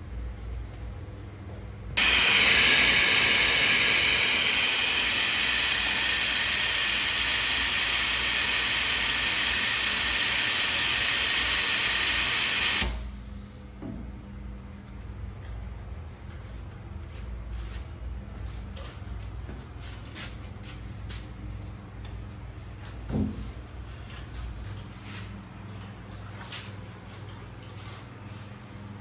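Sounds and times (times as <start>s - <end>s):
air hissing from a nozzle: 2.0s - 13.0s.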